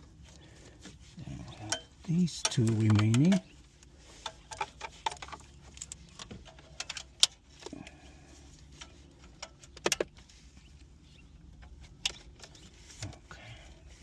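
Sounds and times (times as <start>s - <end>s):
plastic connectors clicking and rattling: 1.7s - 3.5s.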